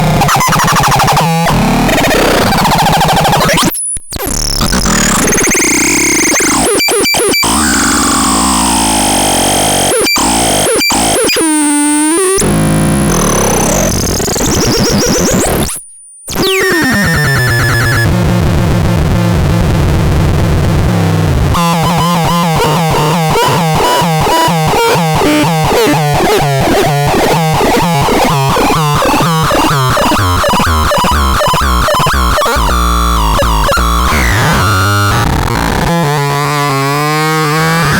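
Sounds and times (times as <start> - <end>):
harsh synthesizer tones: 4.4 - 18.1, 21.6 - 37.9.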